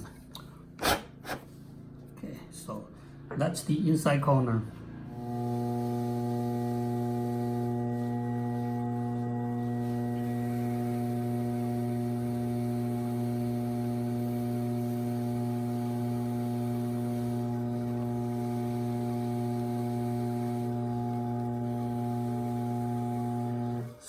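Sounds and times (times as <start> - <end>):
potter's wheel motor humming: 5.1 - 24.0.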